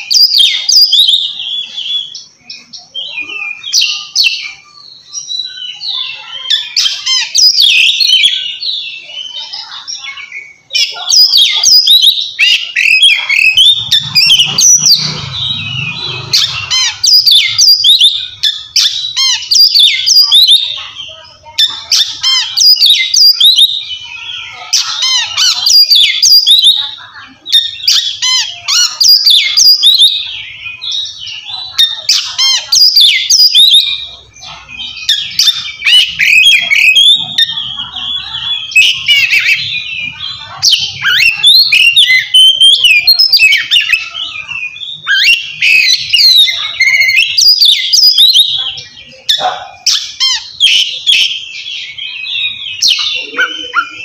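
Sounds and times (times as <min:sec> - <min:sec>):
bird singing whistled phrases: 0:00.0 - 0:54.0.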